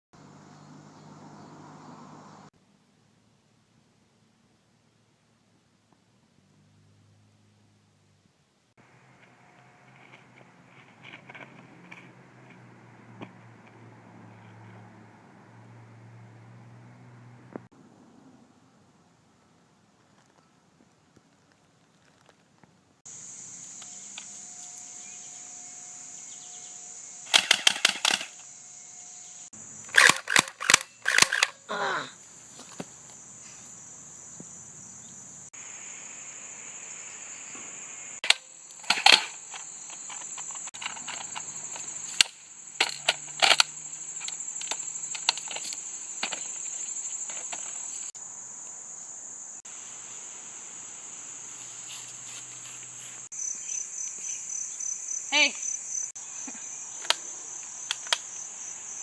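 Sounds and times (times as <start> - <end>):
insects buzzing: 0.2 - 2.5, 23.0 - 59.0.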